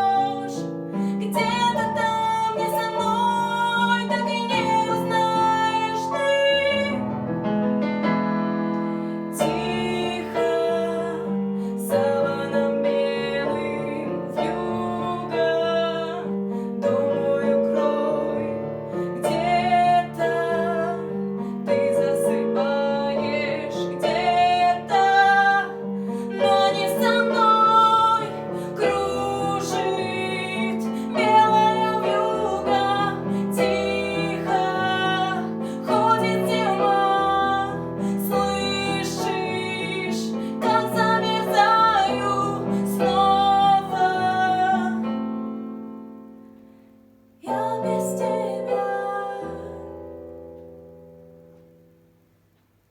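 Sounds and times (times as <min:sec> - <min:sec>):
woman singing: 0:00.0 - 0:07.2, 0:08.8 - 0:45.2, 0:47.4 - 0:50.0.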